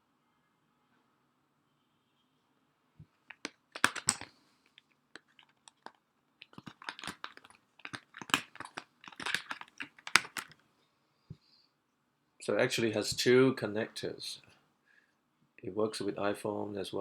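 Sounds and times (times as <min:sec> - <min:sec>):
plastic packaging crackling: 0:03.3 - 0:04.3, 0:05.2 - 0:10.6.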